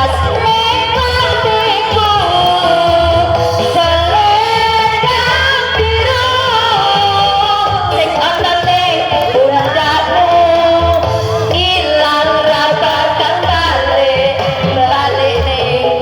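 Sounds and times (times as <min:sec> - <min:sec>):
loud amplified music: 0:00.0 - 0:16.0
person singing: 0:00.0 - 0:16.0.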